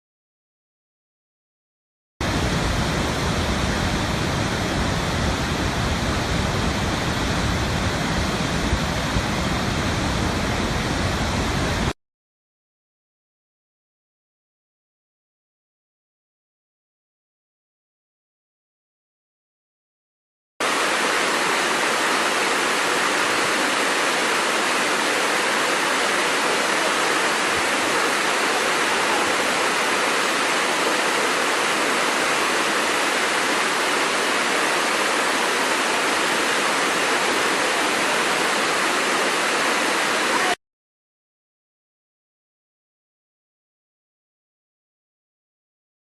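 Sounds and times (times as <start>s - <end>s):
waterfall rushing: 2.2s - 11.9s, 20.6s - 40.6s.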